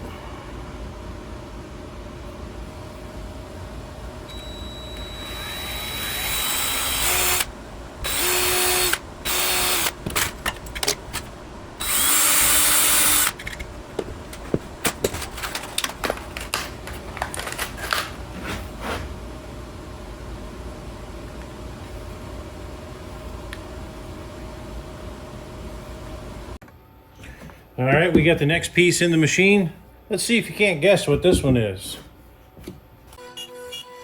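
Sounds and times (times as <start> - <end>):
power tool hissing: 5.4 - 10.0, 11.8 - 13.4.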